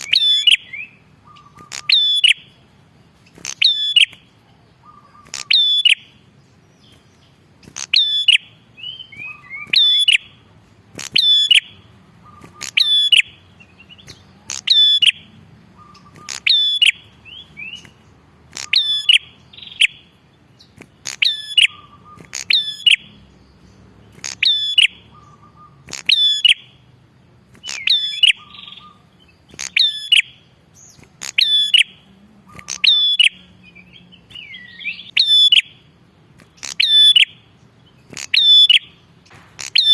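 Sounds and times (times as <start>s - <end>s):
bird sharp chirping call: 0.0s - 26.9s, 27.5s - 39.9s.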